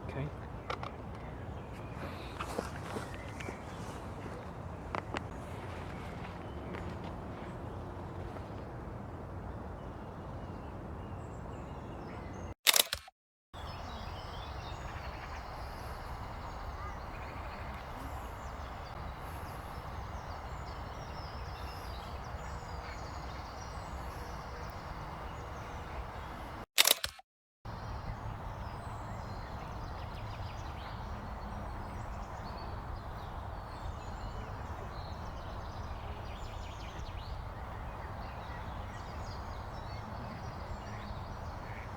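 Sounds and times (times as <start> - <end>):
outdoor ambient noise: 0.0 - 41.9
sharp loud click: 12.7 - 13.1, 26.8 - 27.2
faint bird chirps: 13.6 - 26.6.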